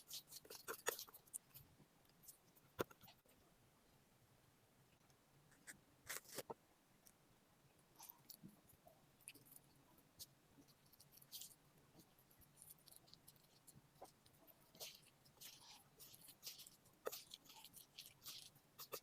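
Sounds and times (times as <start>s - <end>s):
chewing and mouth clicks: 0.0s - 3.2s, 9.2s - 19.0s.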